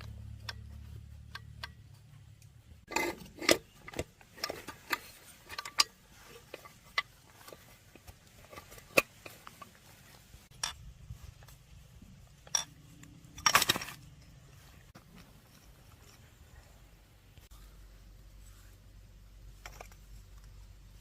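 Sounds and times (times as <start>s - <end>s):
metal tools and parts clinking: 0.0s - 16.6s
metal parts clattering: 2.9s - 9.8s, 12.3s - 14.5s.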